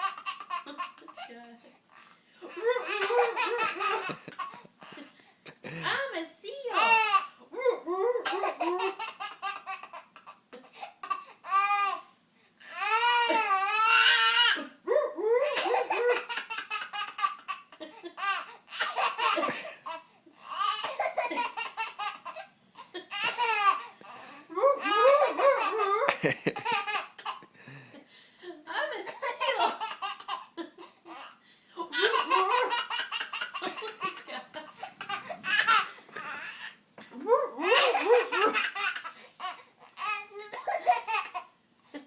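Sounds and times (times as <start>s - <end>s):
child laughing: 2.4s - 5.1s, 31.9s - 36.6s.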